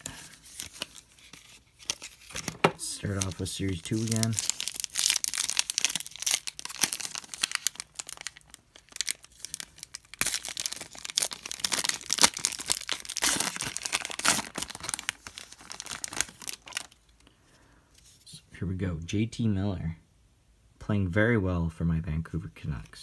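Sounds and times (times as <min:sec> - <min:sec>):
foil pack tearing and crinkling: 0:00.0 - 0:17.0.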